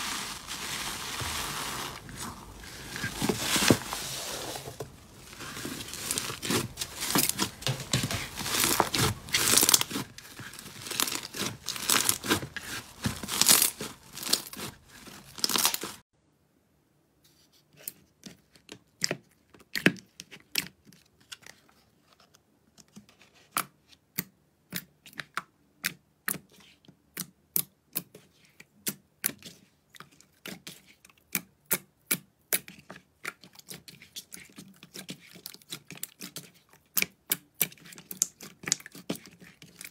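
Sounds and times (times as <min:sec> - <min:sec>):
slime crackling and tearing: 0:00.0 - 0:16.0.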